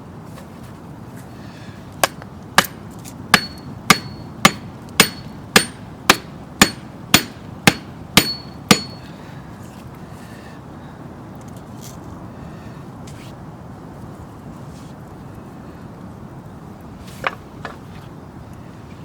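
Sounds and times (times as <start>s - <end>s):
hammer blows with metallic ring: 3.4s - 9.1s.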